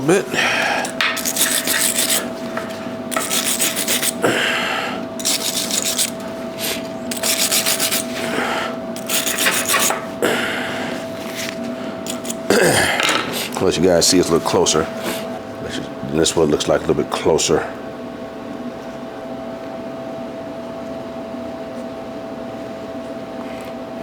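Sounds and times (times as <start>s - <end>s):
brush scrubbing steel: 0.8s - 4.2s, 5.2s - 10.1s, 11.2s - 12.5s.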